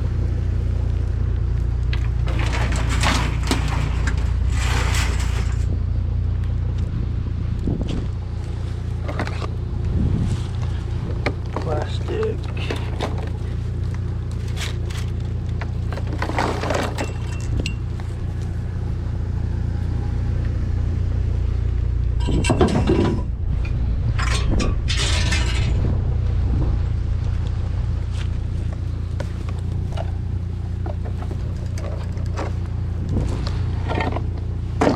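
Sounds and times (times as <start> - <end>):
low engine rumble: 0.0 - 34.9
hard objects clattering and clinking: 1.9 - 5.7, 11.4 - 13.8, 14.4 - 18.5, 22.2 - 23.3, 24.2 - 25.9.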